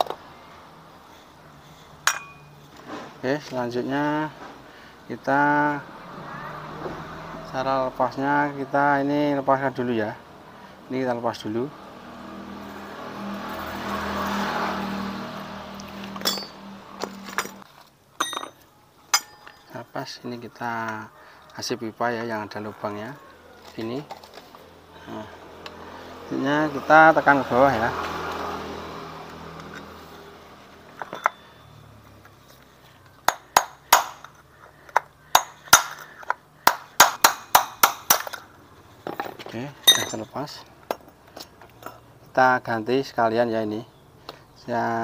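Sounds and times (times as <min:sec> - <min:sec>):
hammer striking metal pipe: 0:02.1 - 0:02.5, 0:16.2 - 0:16.7, 0:18.2 - 0:19.6, 0:33.3 - 0:34.3, 0:36.7 - 0:38.4, 0:39.9 - 0:40.2
metal parts clinking: 0:16.0 - 0:19.7, 0:31.0 - 0:31.7, 0:39.0 - 0:42.0.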